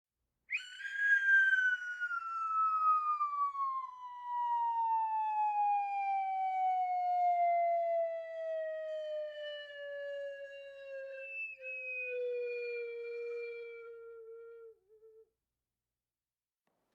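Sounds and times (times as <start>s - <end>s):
cartoon falling whistle: 0.5s - 3.6s.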